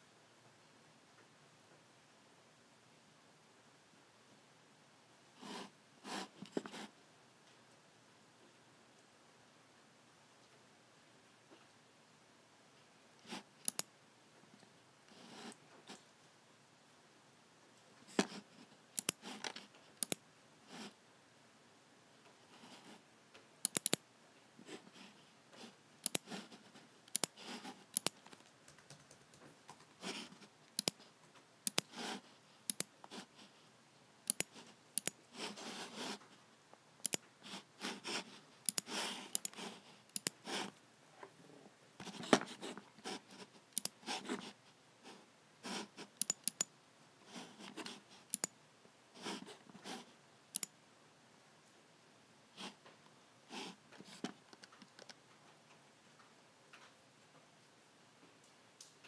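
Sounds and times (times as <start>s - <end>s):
soft scratchy sounds: 5.3s - 7.8s, 22.2s - 23.5s, 24.3s - 46.2s, 52.5s - 59.0s
computer mouse buttons clicking: 13.3s - 13.9s, 19.0s - 20.2s, 23.6s - 24.0s, 26.0s - 26.4s, 27.1s - 29.8s, 30.7s - 31.0s, 31.6s - 32.0s, 32.7s - 33.2s, 34.2s - 36.2s, 37.0s - 37.2s, 38.6s - 40.4s, 43.7s - 44.0s, 46.1s - 46.7s, 47.9s - 48.6s, 50.5s - 50.8s, 54.2s - 55.2s.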